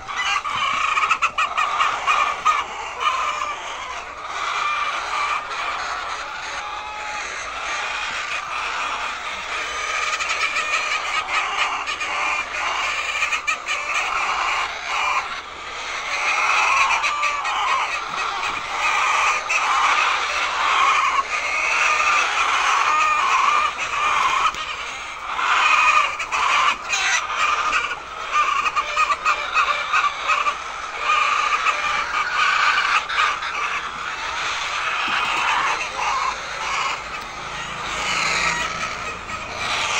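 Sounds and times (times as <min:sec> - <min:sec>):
hens clucking: 0:00.0 - 0:39.9.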